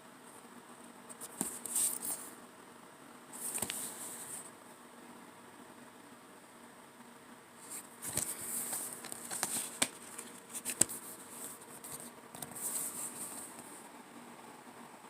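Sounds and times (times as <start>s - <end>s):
plastic packaging crinkling: 7.7s - 11.0s.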